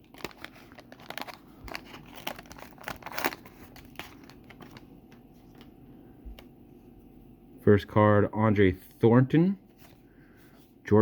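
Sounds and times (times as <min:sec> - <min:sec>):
wax paper wrapper tearing: 0:00.0 - 0:04.8
paper crackling: 0:00.0 - 0:05.7.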